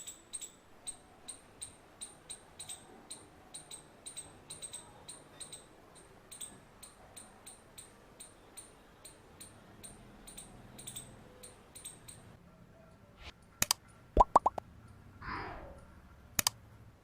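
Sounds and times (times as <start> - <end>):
squirrel chirping: 0.0 - 12.4.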